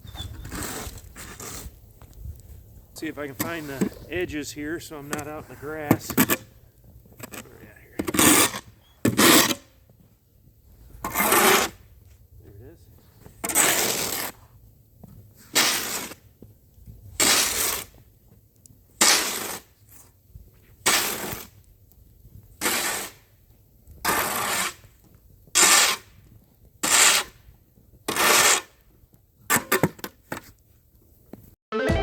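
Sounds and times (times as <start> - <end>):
snow shovel scraping: 0.1 - 1.8, 3.0 - 6.6, 7.2 - 9.8, 10.9 - 11.8, 13.1 - 14.5, 15.4 - 16.3, 17.2 - 17.9, 19.0 - 20.1, 20.8 - 21.6, 22.6 - 23.3, 24.0 - 26.2, 26.8 - 27.4, 28.1 - 28.8.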